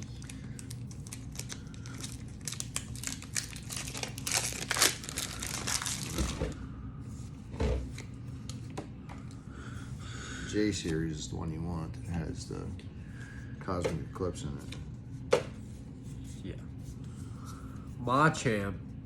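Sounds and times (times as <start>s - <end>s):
foil packaging crinkling and tearing: 0.0s - 6.6s.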